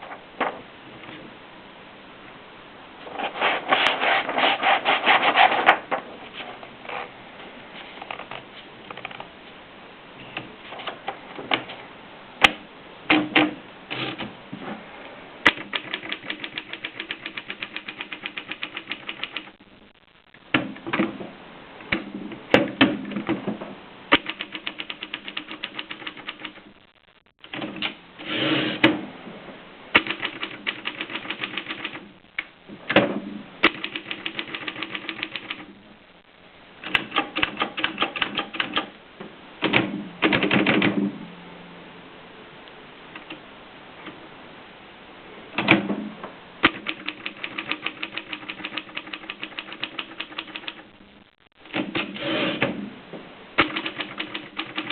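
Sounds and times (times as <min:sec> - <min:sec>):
typewriter keystrokes clacking: 0:15.5 - 0:19.5, 0:24.1 - 0:26.6, 0:30.0 - 0:32.0, 0:33.6 - 0:35.6, 0:36.8 - 0:38.9, 0:46.6 - 0:50.8, 0:53.6 - 0:54.9.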